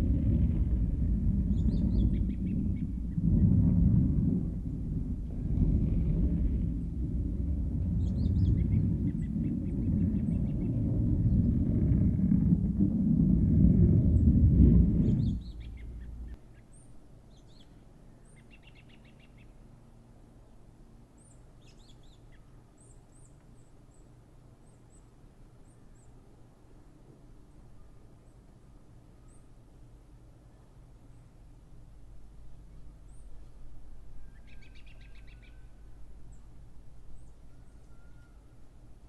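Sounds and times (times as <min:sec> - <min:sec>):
small birds chirping: 0:00.0 - 0:03.8, 0:04.4 - 0:19.5
loud low rumbling: 0:00.0 - 0:16.4.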